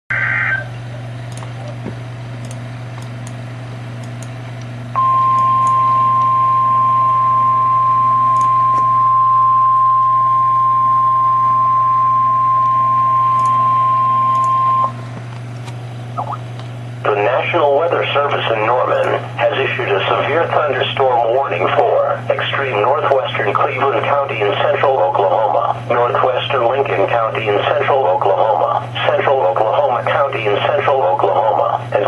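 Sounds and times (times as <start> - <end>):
radio hiss: 0.1 - 1.1, 17.0 - 32.0
low hum: 0.1 - 32.0
steady alarm tone: 4.9 - 15.0.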